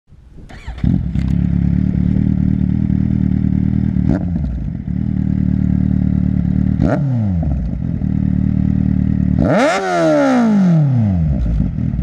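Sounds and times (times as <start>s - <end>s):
motorcycle engine starting and idling: 0.4s - 12.0s.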